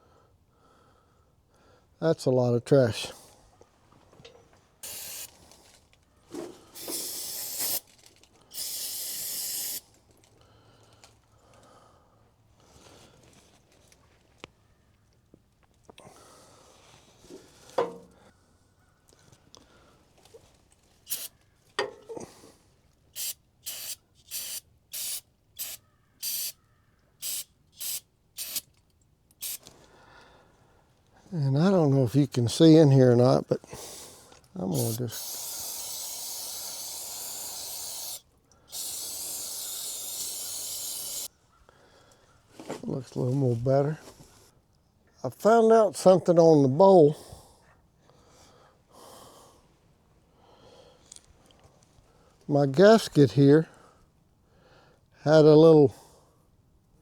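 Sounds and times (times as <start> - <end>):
pressurised spray hissing: 4.8 - 5.3, 6.8 - 7.9, 8.5 - 9.8, 21.1 - 21.3, 23.2 - 26.6, 27.2 - 28.7, 29.4 - 29.6, 34.7 - 41.3.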